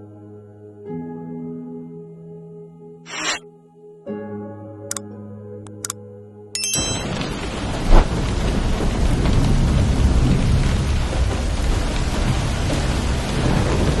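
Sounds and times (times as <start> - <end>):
heavy rain: 6.8 - 14.0
low rumble of thunder: 7.0 - 14.0.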